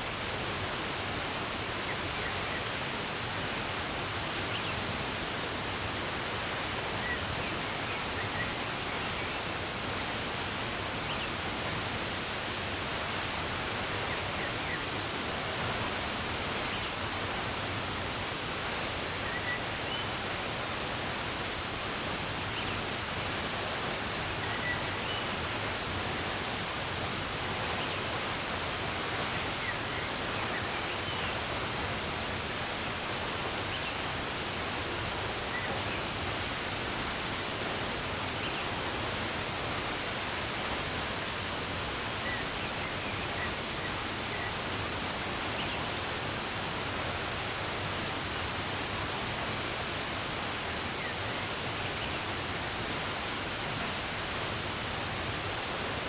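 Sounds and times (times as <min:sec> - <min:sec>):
running water rushing: 0:00.0 - 0:56.0.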